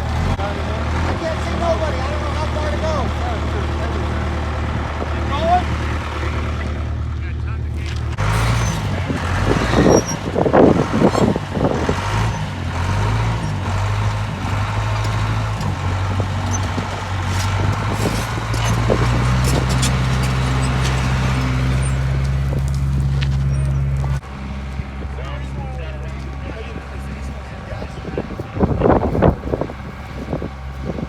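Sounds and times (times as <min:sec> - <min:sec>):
bulldozer diesel engine running: 0:00.0 - 0:31.0
loud irregular noises: 0:07.6 - 0:24.3.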